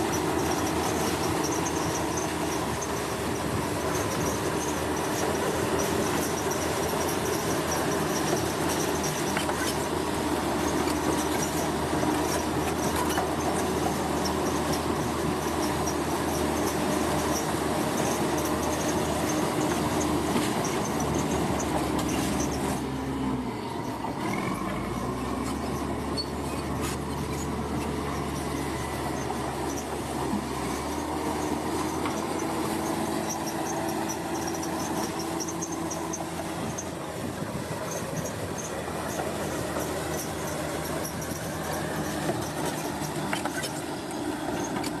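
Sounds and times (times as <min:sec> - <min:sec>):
diesel machinery engine: 0:00.0 - 0:45.0
high metallic squealing: 0:23.6 - 0:37.0, 0:37.8 - 0:45.0.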